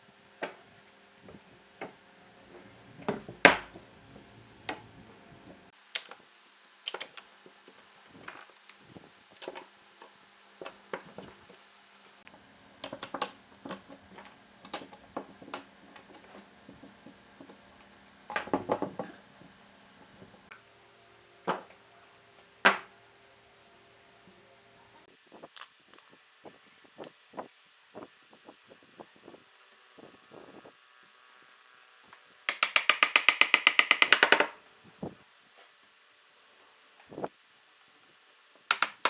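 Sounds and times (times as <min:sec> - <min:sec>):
wood and hand tools knocking: 0:12.8 - 0:17.7, 0:18.3 - 0:19.2, 0:32.5 - 0:34.6, 0:38.7 - 0:39.0.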